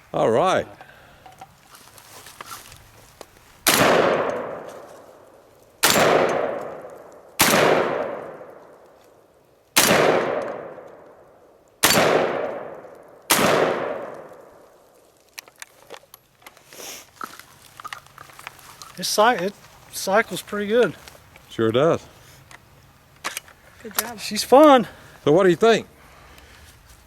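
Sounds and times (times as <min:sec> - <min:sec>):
shotgun shots with echo: 0:03.7 - 0:04.7, 0:05.8 - 0:06.8, 0:07.4 - 0:08.5, 0:09.8 - 0:10.8, 0:11.8 - 0:14.3.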